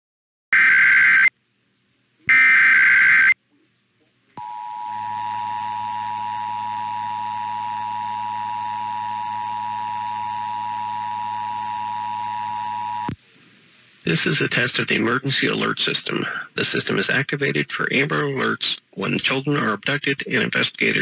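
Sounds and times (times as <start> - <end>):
screechy digital data bursts: 2.3 - 3.4
two-tone attention signal: 4.4 - 13.1.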